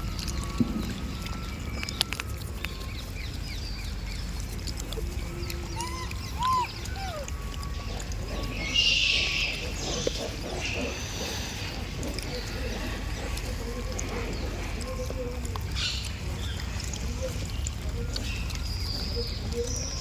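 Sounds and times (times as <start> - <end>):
monkey squeaking and crying: 5.4 - 14.2.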